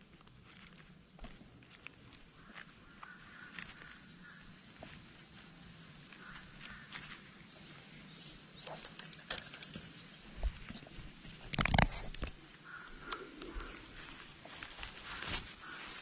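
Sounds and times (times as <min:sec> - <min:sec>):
footsteps through leaf litter: 0:13.9 - 0:16.0.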